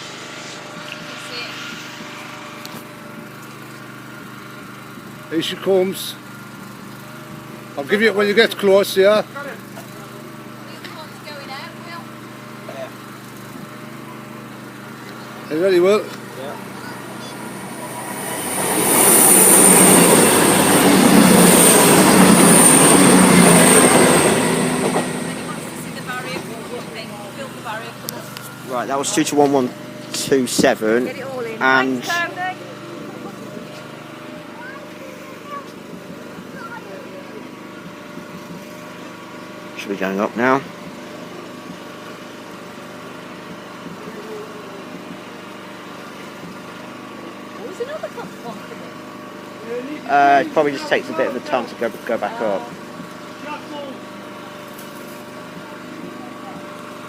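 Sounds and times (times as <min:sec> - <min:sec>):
high-pitched whine: 0:00.0 - 0:03.7, 0:14.6 - 0:34.8
engine idling: 0:00.0 - 0:57.0
train wheels rushing on rails: 0:16.2 - 0:28.7.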